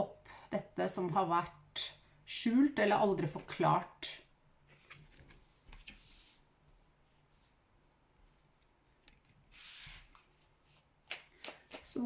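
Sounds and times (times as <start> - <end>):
cards sliding swishes: 4.7 - 6.5.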